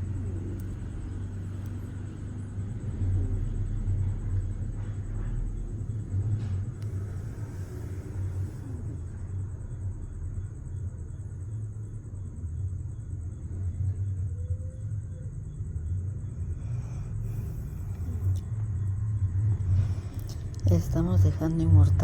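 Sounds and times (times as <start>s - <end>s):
snoring: 6.8s - 9.2s, 16.4s - 18.6s.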